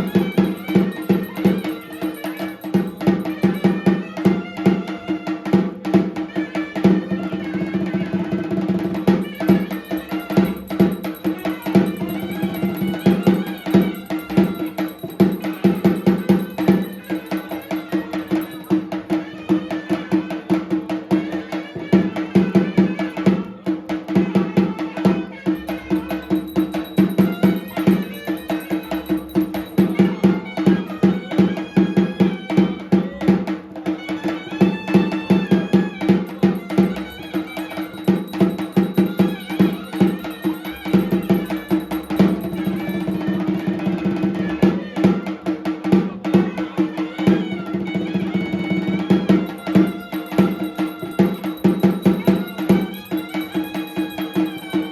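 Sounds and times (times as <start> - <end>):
wavering melody: 0.0 - 4.0, 8.8 - 19.1, 25.4 - 32.8, 34.6 - 44.2, 48.3 - 54.9
clacking percussion: 0.0 - 54.9
fast dense drumming: 7.8 - 18.9, 25.6 - 31.4, 35.6 - 44.4, 48.4 - 54.9.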